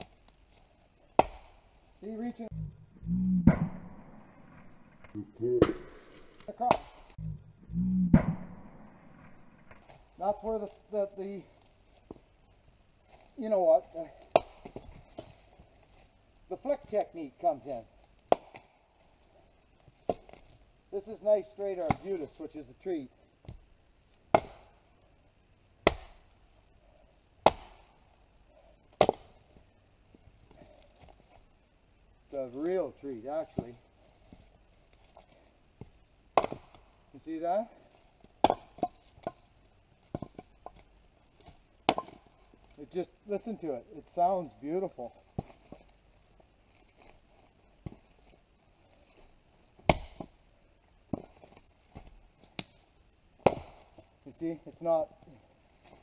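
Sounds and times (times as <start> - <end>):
axe chopping firewood: 1.1 - 1.6, 3.5 - 4.0, 5.6 - 7.2, 8.2 - 8.6, 14.2 - 15.3, 18.2 - 18.7, 20.0 - 20.4, 21.7 - 22.4, 24.3 - 24.8, 25.8 - 26.3, 27.4 - 28.0, 28.9 - 29.4, 35.8 - 36.9, 38.3 - 39.5, 40.1 - 42.4, 49.8 - 50.4, 53.4 - 54.1.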